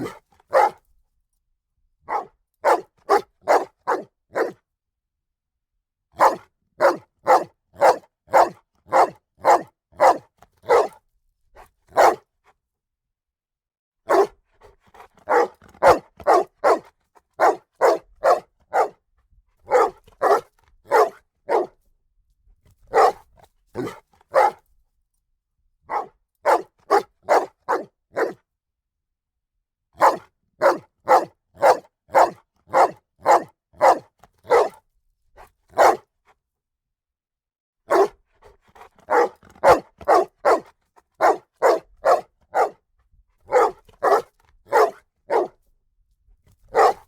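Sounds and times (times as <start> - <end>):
dog barking: 0.0 - 0.8, 2.1 - 4.6, 6.2 - 11.0, 11.9 - 12.3, 14.1 - 19.0, 19.7 - 21.8, 22.9 - 24.6, 25.9 - 28.4, 30.0 - 34.8, 35.7 - 36.1, 37.9 - 42.8, 43.5 - 45.6, 46.7 - 47.0.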